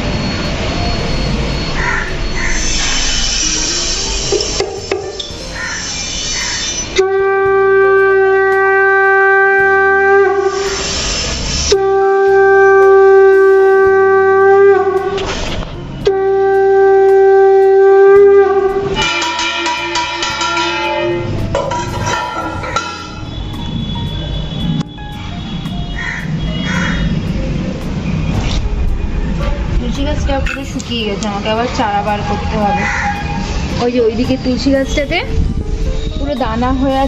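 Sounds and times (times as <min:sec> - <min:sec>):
conch shell blasts: 0:02.4 - 0:23.9.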